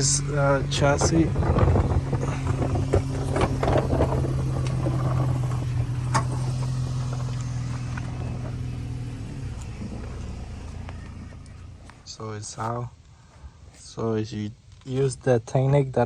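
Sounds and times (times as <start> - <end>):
machine humming: 0.0 - 12.2.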